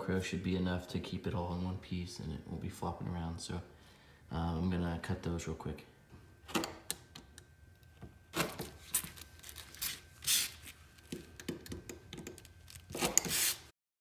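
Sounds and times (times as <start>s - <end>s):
crinkly handling noise: 8.4s - 11.4s
cutting strokes: 12.9s - 13.7s.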